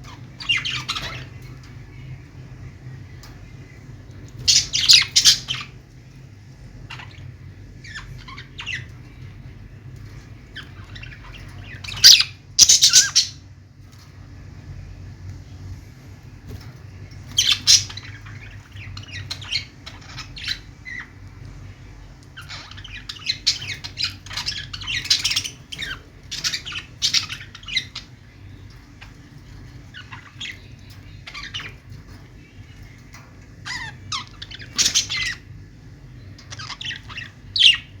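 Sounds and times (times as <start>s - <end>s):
parrots chirping softly: 0.0s - 38.0s.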